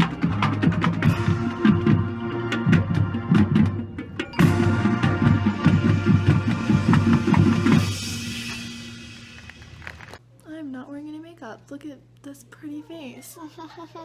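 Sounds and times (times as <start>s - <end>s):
bass line: 0.0s - 9.2s.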